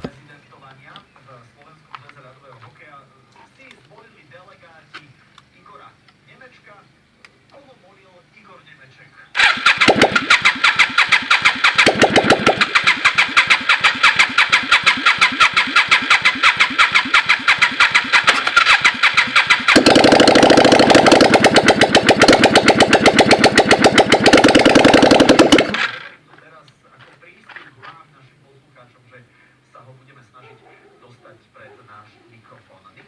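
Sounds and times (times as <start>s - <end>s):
motorcycle engine pulsing: 9.4s - 26.1s.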